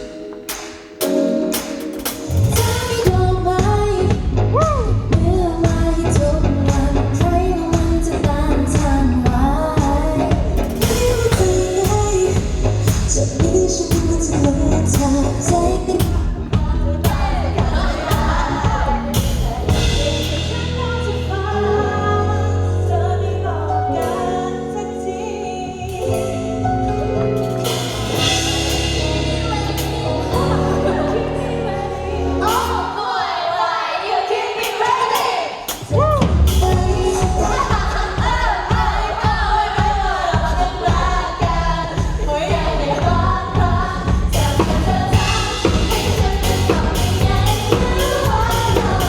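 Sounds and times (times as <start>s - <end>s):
drums beating: 0.0s - 21.0s, 27.4s - 31.4s, 34.6s - 49.0s
live pop band: 0.0s - 49.0s
person singing: 27.7s - 49.0s.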